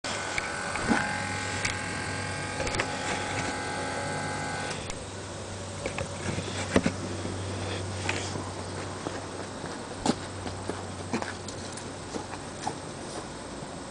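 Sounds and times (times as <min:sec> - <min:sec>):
high steady whine: 0:00.0 - 0:13.9
engine idling hum: 0:00.1 - 0:13.9
sharp clicks: 0:00.3 - 0:03.6.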